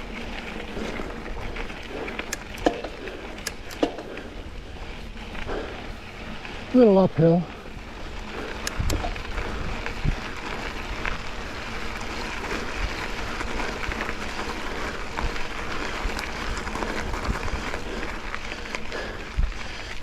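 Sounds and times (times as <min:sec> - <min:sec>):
bike tyres on dirt: 0:00.0 - 0:20.0
bike clicks and knocks: 0:00.4 - 0:04.4, 0:08.3 - 0:19.2.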